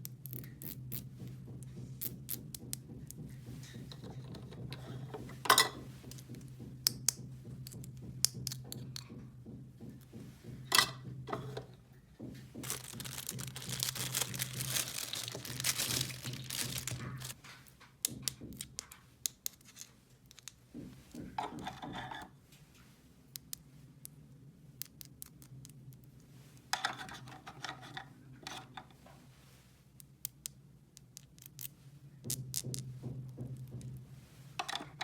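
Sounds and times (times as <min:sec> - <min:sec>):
wrapping crinkling: 0:12.6 - 0:17.4.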